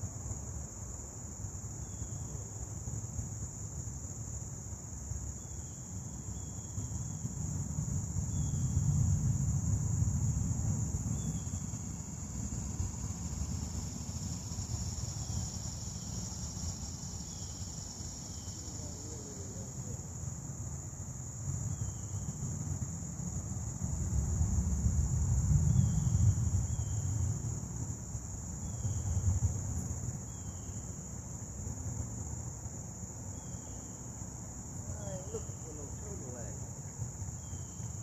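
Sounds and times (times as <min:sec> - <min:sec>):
insect chorus: 0:00.0 - 0:38.0
short insect chirps: 0:11.1 - 0:20.5, 0:21.6 - 0:22.4, 0:25.7 - 0:27.4, 0:28.2 - 0:31.9, 0:32.8 - 0:38.0.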